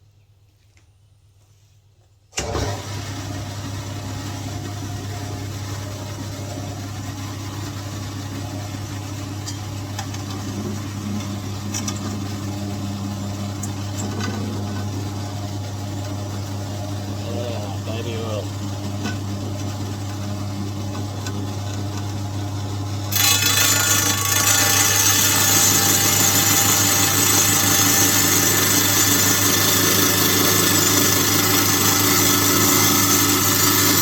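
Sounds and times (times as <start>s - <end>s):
rock saw motor humming: 17.2s - 18.4s, 23.1s - 34.0s.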